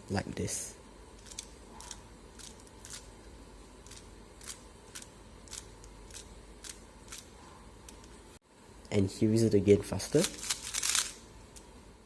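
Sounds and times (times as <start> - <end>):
puzzle cube turning clicks: 1.2 - 3.1, 3.8 - 7.3, 10.2 - 11.7.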